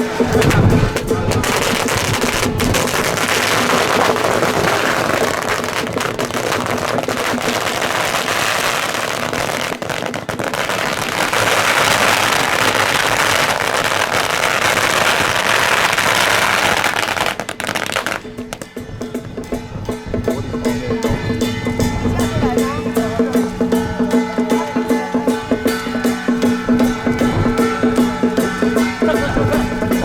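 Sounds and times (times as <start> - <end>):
firecrackers crackling: 0.0 - 18.8.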